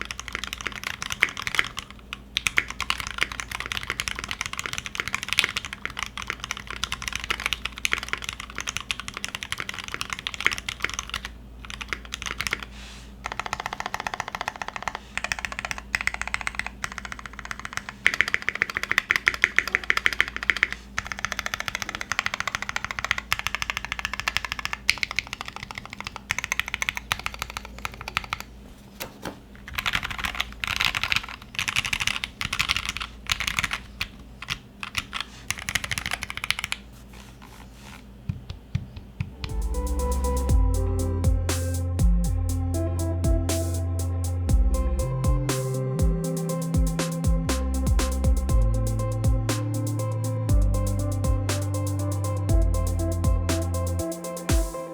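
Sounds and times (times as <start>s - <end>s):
mechanical keyboard typing: 0.0s - 28.5s, 29.6s - 36.8s.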